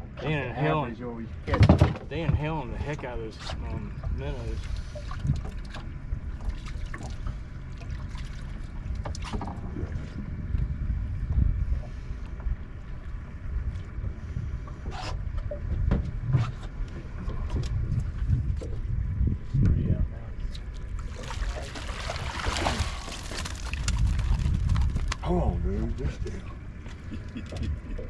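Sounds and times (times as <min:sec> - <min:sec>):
water lapping against boat hull: 0:01.2 - 0:28.0
wind buffeting microphone: 0:09.4 - 0:28.0.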